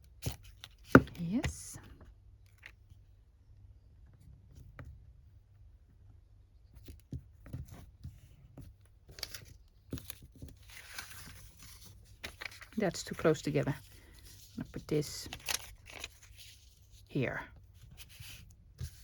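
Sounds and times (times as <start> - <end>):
paper taps and rustles: 9.1 - 12.8, 15.2 - 16.7.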